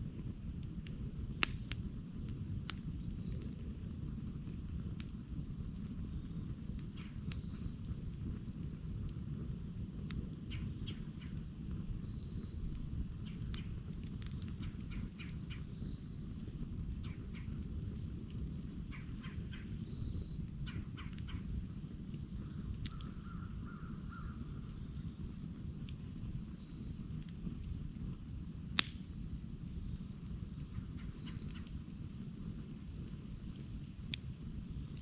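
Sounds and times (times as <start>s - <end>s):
campfire burning: 0.0s - 35.0s
wood crackling and snapping: 0.1s - 35.0s
loud fire pop: 1.4s - 1.8s, 28.8s - 29.1s.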